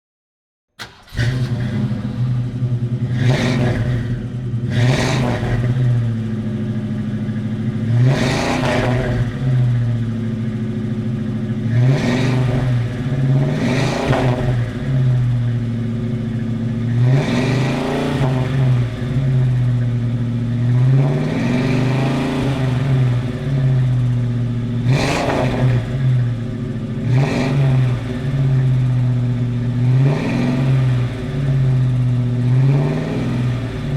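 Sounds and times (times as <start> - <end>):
car engine idling and revving: 0.8 - 33.9.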